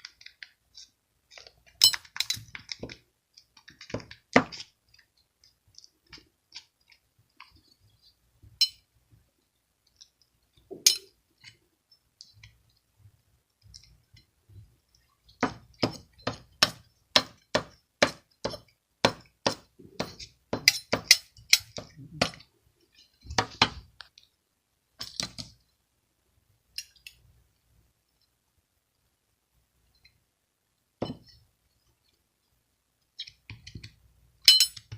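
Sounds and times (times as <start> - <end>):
sharp clicks and clinks: 34.4 - 34.9.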